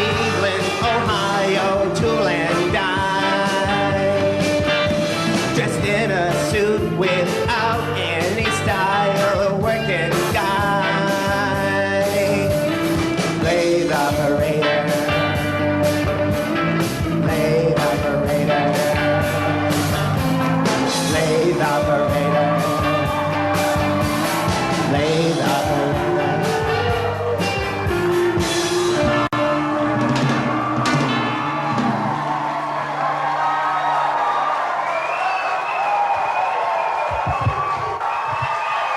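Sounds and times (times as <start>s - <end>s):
sliding bending lead guitar lines: 0.0s - 32.6s
rock band playing: 0.0s - 34.9s
drum hits: 26.8s - 32.5s.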